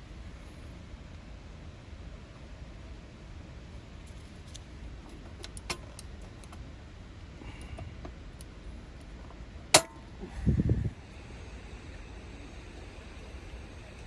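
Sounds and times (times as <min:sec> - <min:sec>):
low rumble: 0:10.1 - 0:13.5.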